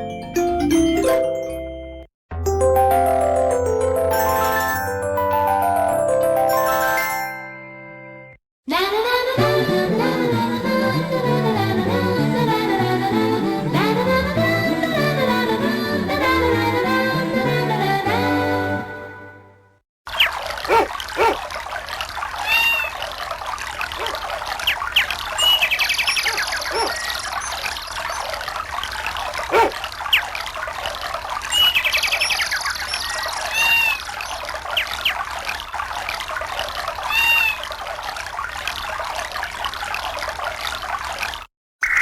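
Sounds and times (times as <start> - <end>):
running water: 20.1 - 41.5
birds chirping: 20.2 - 21.4, 24.7 - 28.4, 29.5 - 29.8.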